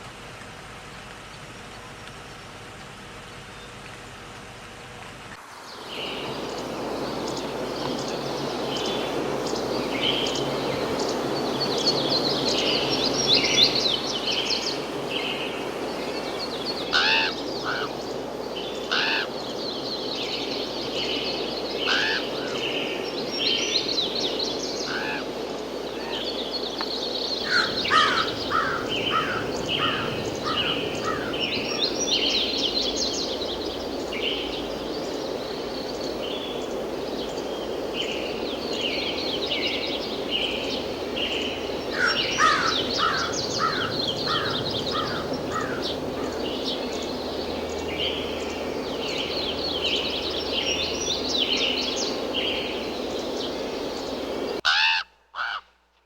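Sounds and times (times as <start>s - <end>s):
steady background hiss: 0.0s - 56.0s
birds chirping: 5.7s - 54.7s
crows cawing harshly: 16.9s - 17.9s, 18.9s - 19.3s, 21.8s - 22.5s, 24.9s - 25.3s, 27.4s - 31.7s, 41.9s - 46.4s, 54.6s - 55.8s.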